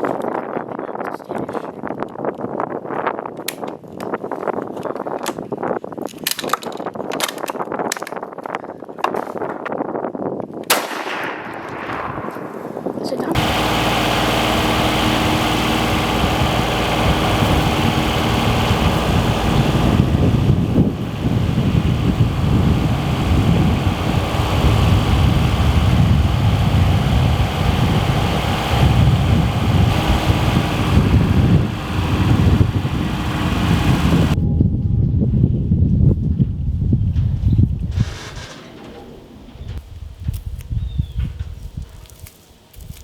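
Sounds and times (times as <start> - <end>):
wind buffeting microphone: 0.0 - 42.2
steady tones: 13.0 - 34.4
vehicle engine running: 13.3 - 34.4.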